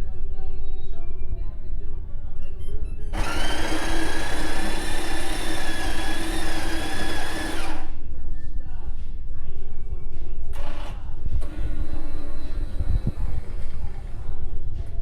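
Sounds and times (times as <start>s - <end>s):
coffee machine whirring: 3.1s - 8.0s, 10.6s - 14.4s.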